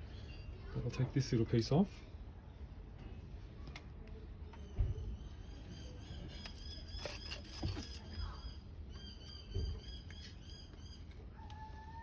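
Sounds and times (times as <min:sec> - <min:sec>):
small bird chirping: 0:04.5 - 0:11.8.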